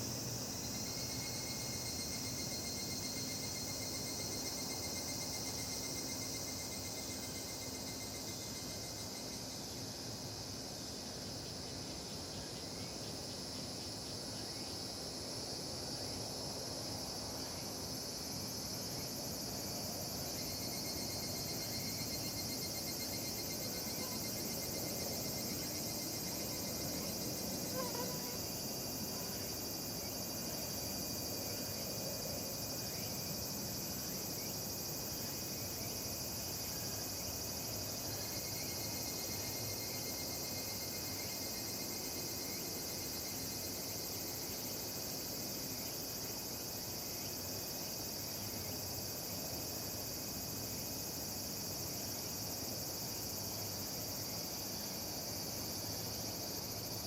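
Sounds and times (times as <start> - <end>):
cicadas shrilling: 0.0 - 9.9, 17.4 - 57.0
mosquito whine: 26.4 - 28.5.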